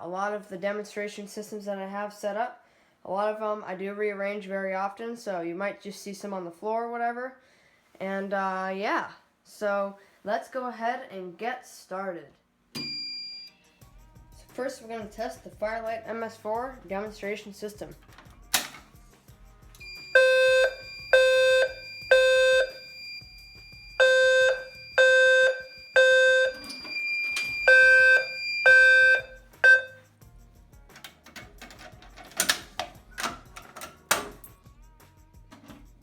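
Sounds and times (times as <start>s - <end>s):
fire alarm horn blasts: 19.8s - 30.0s
steady high-pitched tone: 19.8s - 30.0s.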